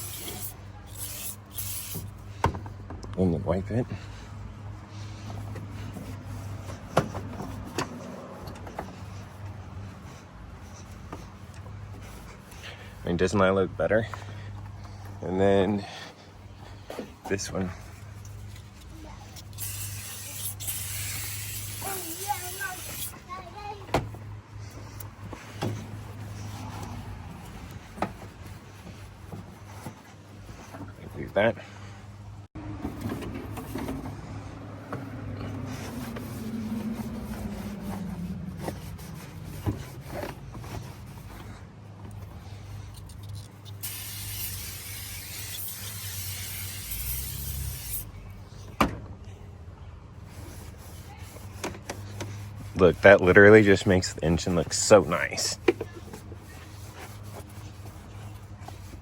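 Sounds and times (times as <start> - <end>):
aerosol can spraying: 0.0 - 2.2, 19.4 - 23.2, 43.7 - 48.1.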